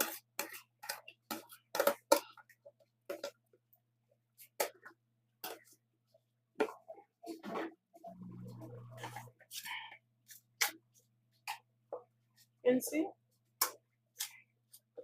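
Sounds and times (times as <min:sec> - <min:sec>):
faint low hum: 0:08.0 - 0:09.4.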